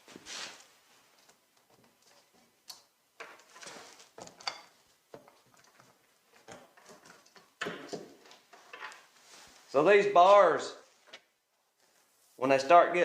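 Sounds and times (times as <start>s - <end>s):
objects clicking and clattering: 1.6s - 9.1s.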